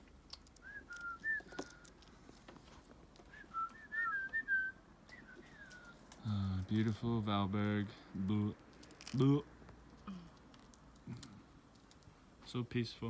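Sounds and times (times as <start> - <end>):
small birds chirping: 3.2 - 12.2.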